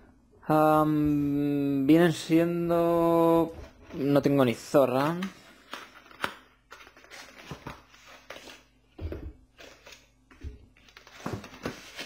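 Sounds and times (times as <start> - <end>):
paper and cardboard rustling: 3.4 - 12.0.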